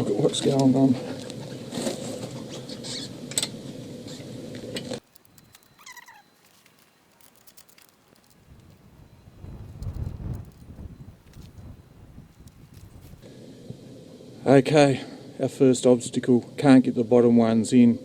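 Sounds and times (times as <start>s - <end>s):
scattered clicks: 5.0s - 8.9s
falling chirps: 5.0s - 13.2s
scuffing and rustling: 5.0s - 13.2s.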